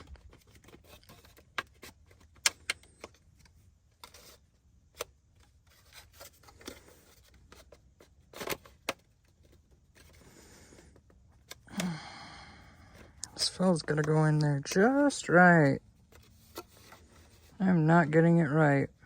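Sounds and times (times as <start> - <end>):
plastic parts clicking and knocking: 0.0 - 10.2.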